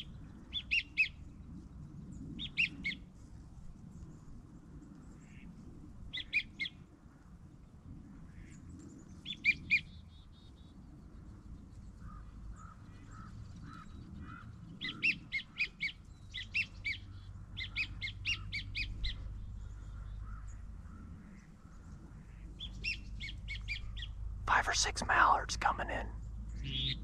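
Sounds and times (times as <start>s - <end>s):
softer lower bird calls: 26.6s - 27.0s.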